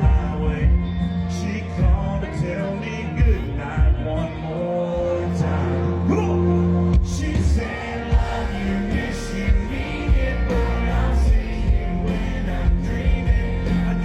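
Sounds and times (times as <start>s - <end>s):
drums steady beat: 0.0s - 1.1s, 3.2s - 4.2s, 7.0s - 14.0s
country band with guitars: 0.0s - 14.0s
man singing: 0.0s - 14.0s.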